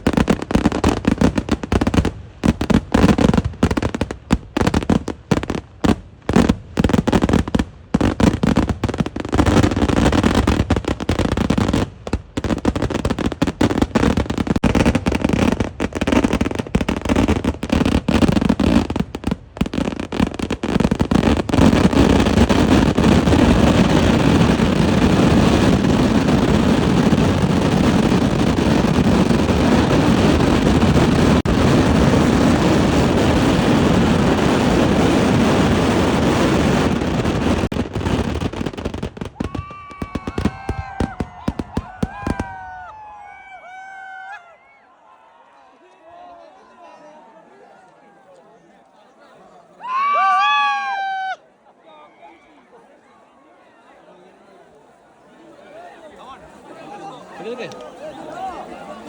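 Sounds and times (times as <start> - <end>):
fireworks exploding rapidly: 0.0 - 42.9.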